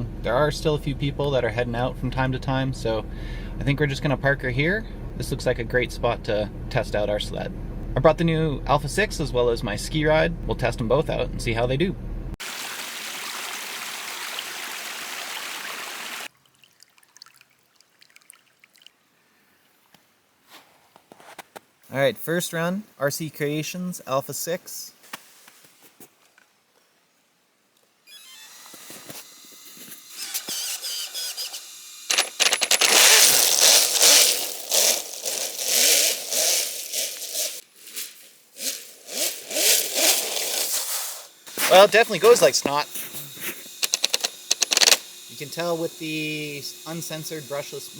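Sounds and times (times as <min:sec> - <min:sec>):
electric motor whining: 0:28.2 - 0:37.6, 0:41.4 - 0:47.9
faint ticks and crunches: 0:32.1 - 0:45.1
steady rushing hiss: 0:32.1 - 0:47.9.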